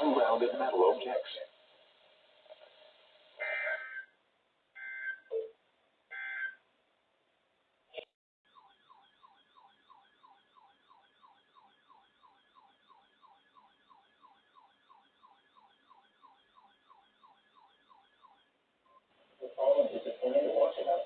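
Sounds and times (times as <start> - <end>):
faint falling electronic siren tone: 8.5 - 19.0.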